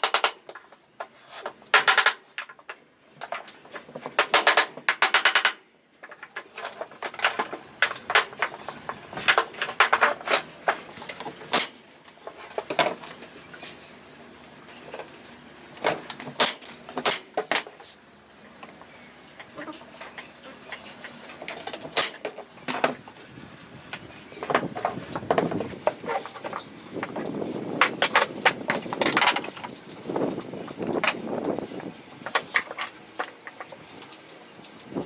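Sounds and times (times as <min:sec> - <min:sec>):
knocks and clicks of tools: 0:00.0 - 0:13.0, 0:23.9 - 0:29.8
rubbing or scraping wood: 0:01.0 - 0:02.2.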